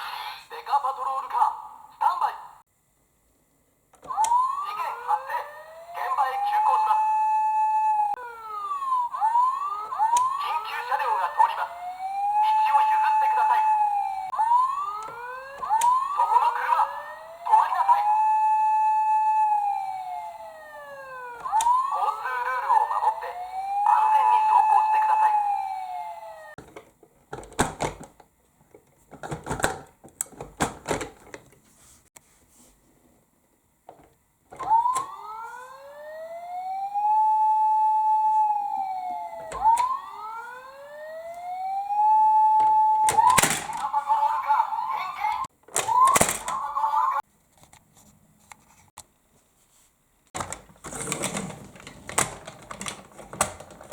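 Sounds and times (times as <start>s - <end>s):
toy siren wailing: 4.1s - 26.6s, 34.6s - 47.2s.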